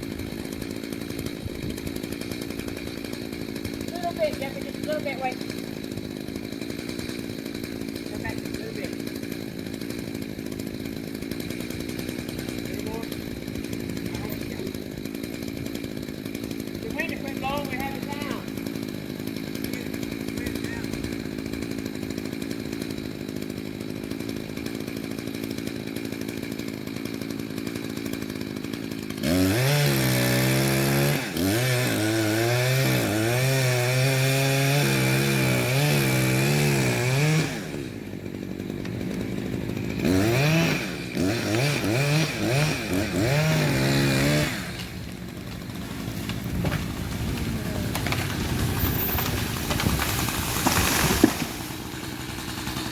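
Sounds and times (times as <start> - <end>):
chainsaw cutting wood: 0.0 - 52.9
chainsaw idling and revving: 0.0 - 52.9.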